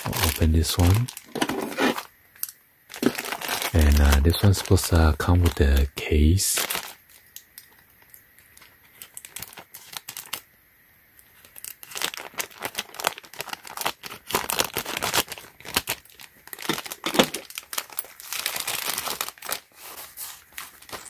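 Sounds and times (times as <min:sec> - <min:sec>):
packaging crinkling: 0:00.0 - 0:10.5, 0:11.3 - 0:21.0.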